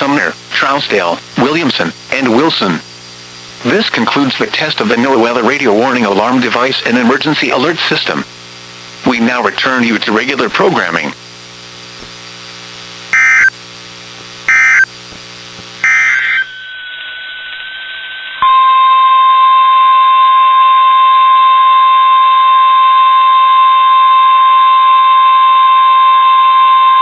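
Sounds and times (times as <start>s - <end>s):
steady electrical hum: 0.0s - 19.8s
shrill warbling data tones: 13.2s - 13.5s, 14.5s - 14.9s, 15.8s - 18.4s
steady warning alarm tone: 13.2s - 13.5s, 14.5s - 14.9s, 15.8s - 27.0s.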